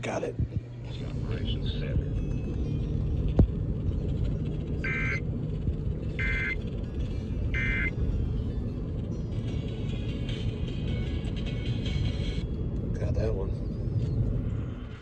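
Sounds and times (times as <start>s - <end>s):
radio reception noise rumble: 0.0s - 8.6s
digital data tone bursts: 4.8s - 5.3s, 6.2s - 6.6s, 7.6s - 7.9s.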